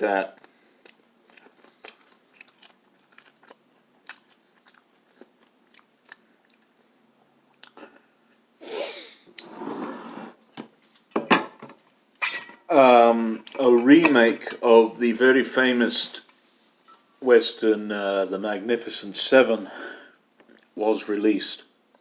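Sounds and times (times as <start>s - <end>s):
person chewing crunchy snack: 0.4s - 6.9s.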